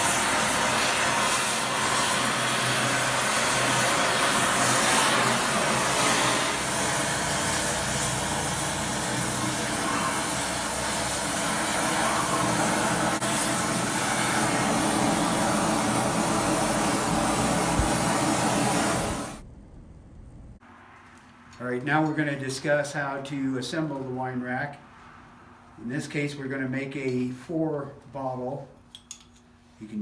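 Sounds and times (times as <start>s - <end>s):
forge hissing roar: 0.0s - 19.4s.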